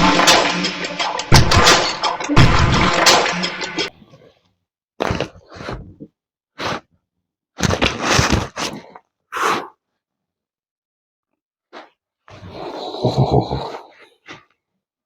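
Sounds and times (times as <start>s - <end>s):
clattering and scraping: 0.0s - 3.9s.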